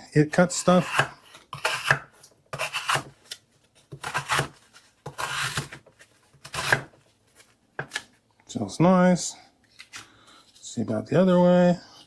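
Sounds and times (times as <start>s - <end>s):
knife slicing cardboard: 2.6s - 3.2s, 3.9s - 5.8s, 6.4s - 6.9s.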